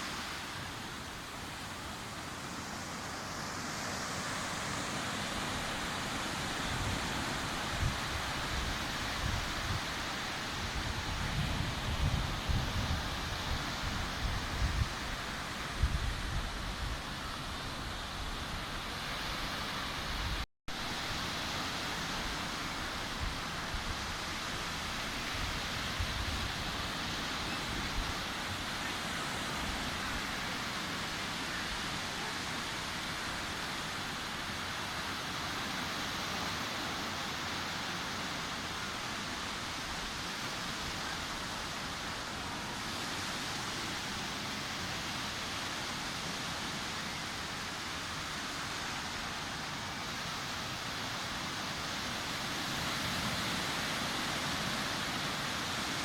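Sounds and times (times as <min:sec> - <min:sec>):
waves breaking on a beach: 0:00.0 - 0:56.0.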